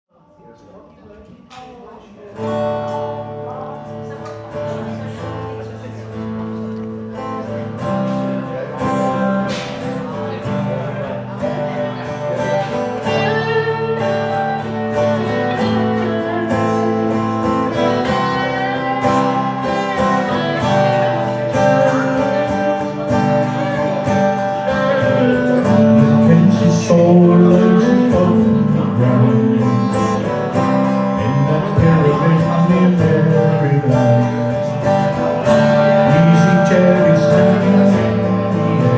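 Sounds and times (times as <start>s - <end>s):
strummed acoustic guitar: 1.6s - 38.9s.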